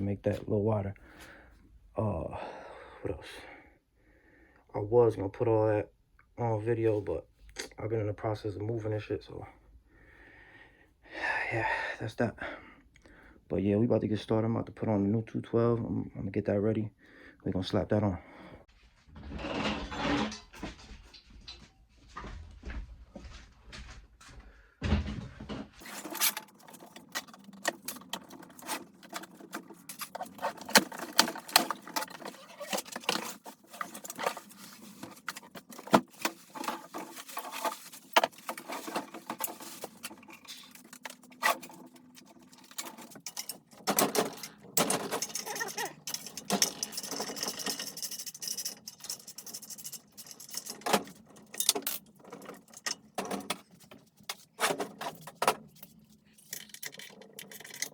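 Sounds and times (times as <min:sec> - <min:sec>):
metal parts and tools clinking: 0:25.8 - 0:57.9.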